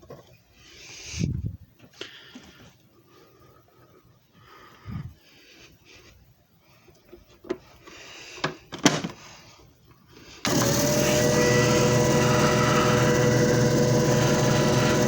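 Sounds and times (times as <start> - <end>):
machine motor humming: 10.4 - 15.0.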